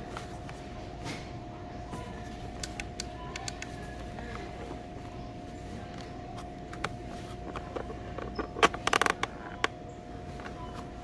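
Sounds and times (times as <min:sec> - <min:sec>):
faint steady hum: 0:00.0 - 0:11.0
handling clicks and rattling: 0:06.7 - 0:09.8.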